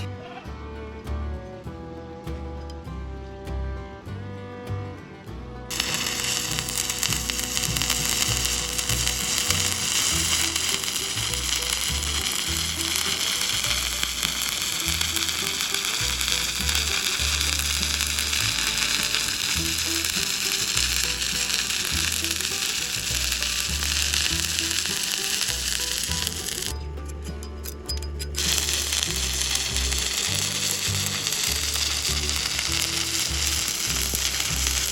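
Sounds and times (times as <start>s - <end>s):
background music with beat: 0.0s - 34.9s
welding arc crackling and sizzling: 5.7s - 26.8s, 28.4s - 34.9s.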